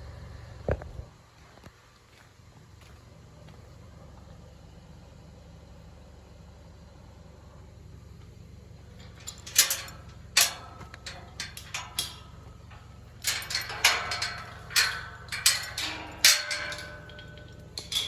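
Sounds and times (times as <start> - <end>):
metal chain clanking against gate: 8.9 - 18.0.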